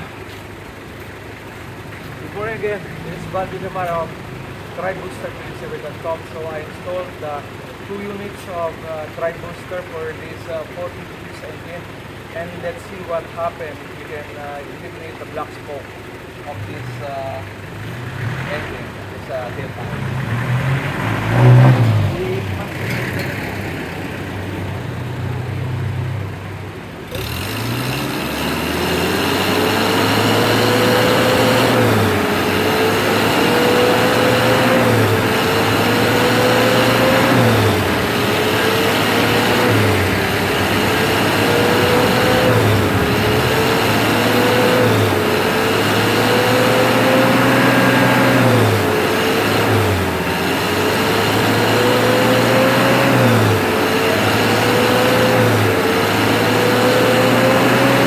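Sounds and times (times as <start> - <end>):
diesel engine revving: 0.0 - 58.0.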